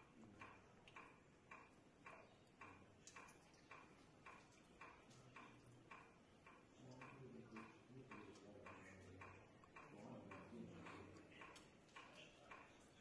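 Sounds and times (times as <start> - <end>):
faint steady ticking: 0.0 - 13.0.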